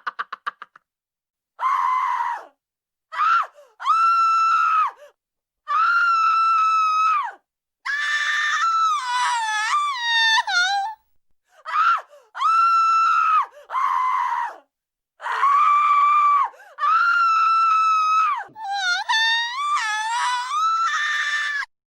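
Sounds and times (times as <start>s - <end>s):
high-pitched human screams: 7.9s - 10.9s, 15.2s - 21.7s.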